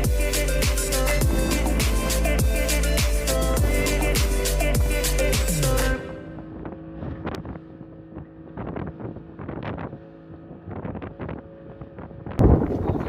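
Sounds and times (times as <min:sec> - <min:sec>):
music: 0:00.0 - 0:06.3
boat engine hum: 0:00.0 - 0:13.0
wind on microphone: 0:06.5 - 0:13.0.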